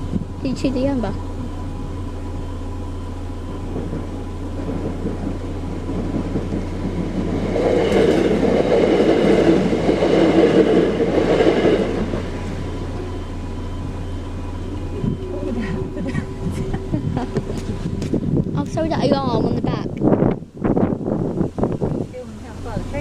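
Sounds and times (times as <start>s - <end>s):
faint crossing alarm tone: 0.0s - 18.0s
train rumble and wheel clatter: 0.0s - 23.0s.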